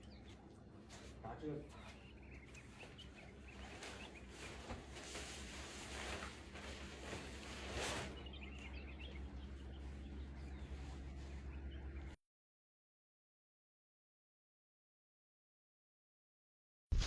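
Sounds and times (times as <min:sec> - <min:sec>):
birds chirping: 0:00.0 - 0:12.2
tent fabric rustling: 0:02.5 - 0:08.5.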